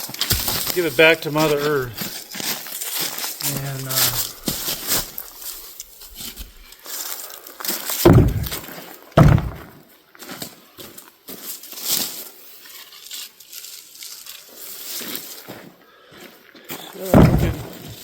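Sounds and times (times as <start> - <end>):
wood and brush crunching: 0.0 - 9.8, 11.3 - 15.6, 16.8 - 18.0
firewood thudding into wheelbarrow: 0.2 - 0.8, 6.0 - 6.6, 8.0 - 9.8, 17.0 - 18.0.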